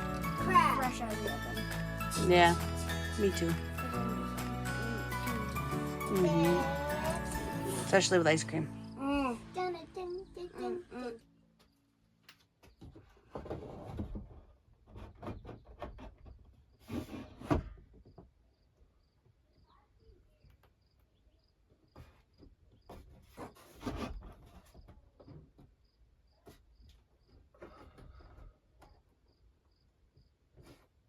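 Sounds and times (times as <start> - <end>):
cricket chirping: 8.6 - 10.7, 18.5 - 19.8, 20.8 - 21.5, 28.9 - 30.3
handling knocks and scrapes: 21.9 - 25.8.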